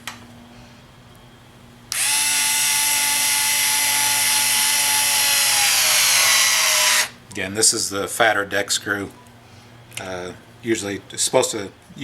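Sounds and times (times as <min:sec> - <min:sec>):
cordless screwdriver whining: 0:01.9 - 0:07.2.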